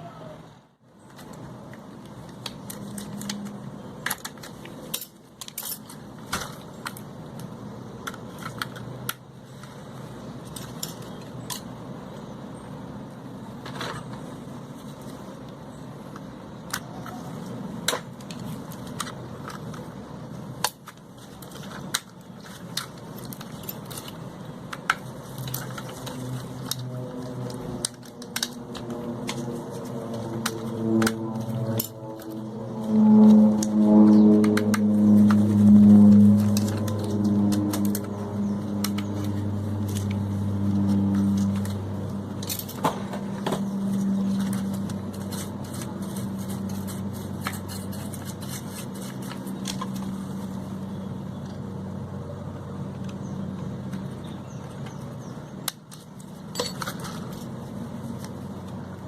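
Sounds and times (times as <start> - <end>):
tools and parts clattering: 2.6 - 7.1, 10.4 - 11.7, 20.6 - 40.2, 40.8 - 50.2, 55.9 - 57.6.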